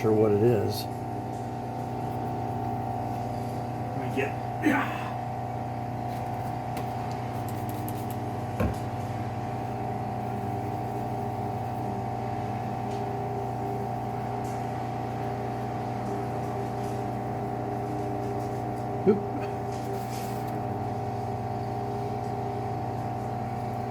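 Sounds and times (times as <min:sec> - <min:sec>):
bench grinder humming: 0:00.0 - 0:23.9.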